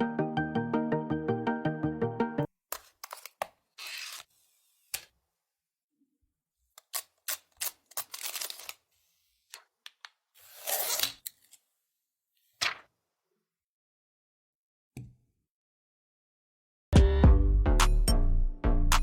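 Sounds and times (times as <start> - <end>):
packaging rustling: 7.2 - 8.9.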